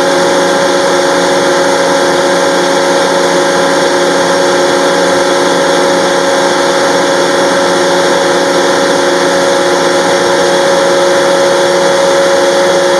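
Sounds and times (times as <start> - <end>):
air compressor running: 0.0 - 12.9.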